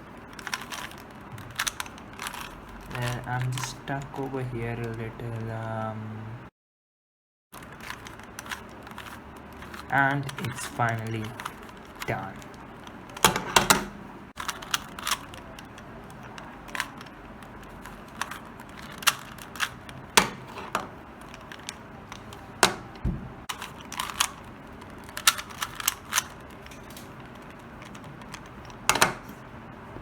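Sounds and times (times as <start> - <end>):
puzzle cube clicking: 0.4 - 5.5, 7.6 - 13.4, 14.4 - 29.3
dull deep knock: 23.0 - 23.4.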